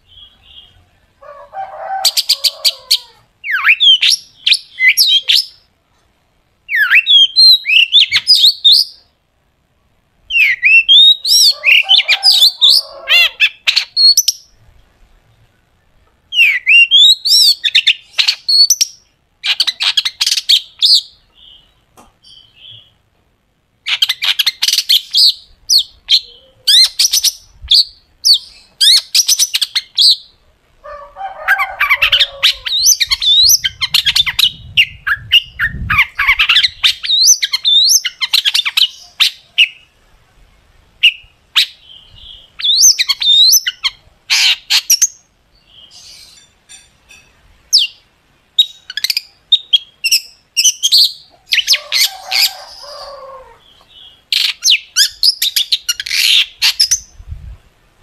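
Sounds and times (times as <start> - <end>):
bird singing fast chattering song: 3.4 - 5.7, 6.7 - 9.1, 10.3 - 14.6, 15.7 - 23.0, 23.8 - 30.4, 32.0 - 39.9, 41.0 - 46.8, 47.7 - 51.8, 53.7 - 57.2.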